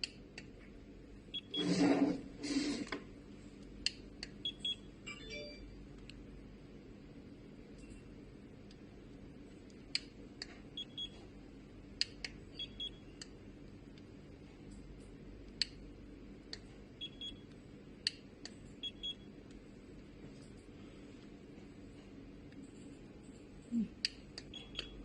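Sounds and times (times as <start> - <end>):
thermometer sharp clicks: 9.6 - 10.6, 14.7 - 15.8, 18.0 - 18.7.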